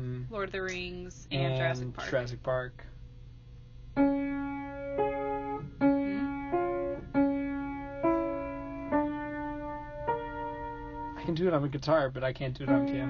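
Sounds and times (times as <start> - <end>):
piano playing slow melody: 4.0 - 11.7, 12.6 - 13.0.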